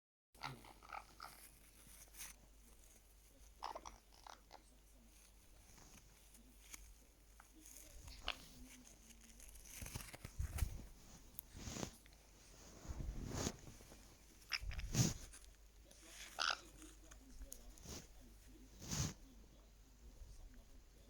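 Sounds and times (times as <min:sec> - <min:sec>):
parrot clicking and nibbling: 0:00.4 - 0:10.7.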